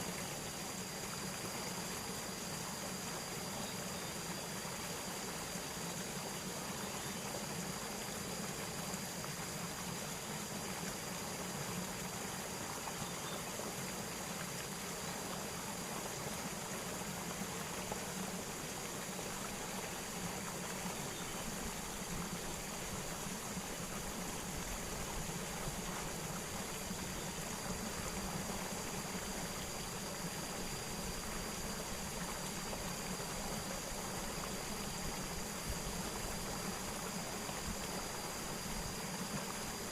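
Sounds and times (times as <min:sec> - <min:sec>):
water flowing: 0:00.0 - 0:39.9.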